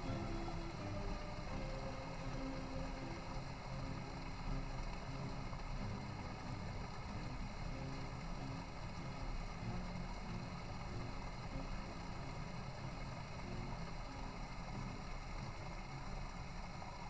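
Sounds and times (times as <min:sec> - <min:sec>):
stream rushing: 0:00.0 - 0:17.0.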